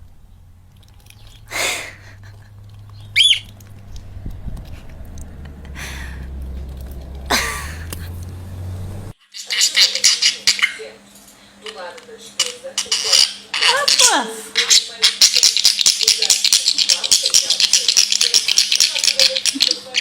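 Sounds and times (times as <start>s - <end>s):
parrot squawking: 1.2s - 4.0s, 9.4s - 10.9s.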